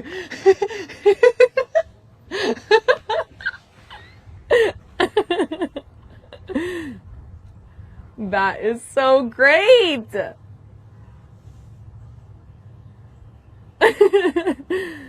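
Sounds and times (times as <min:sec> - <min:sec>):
people laughing: 0:00.0 - 0:03.6.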